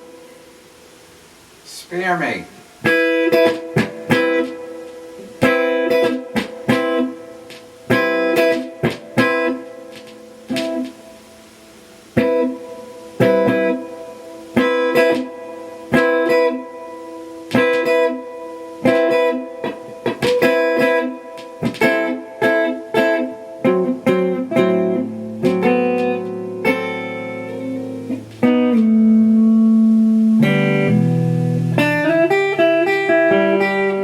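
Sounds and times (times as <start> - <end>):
electric guitar chords and notes: 2.5 - 34.0
sharp click on guitar attacks: 3.3 - 11.0, 17.5 - 18.2, 18.8 - 23.3, 25.4 - 26.4.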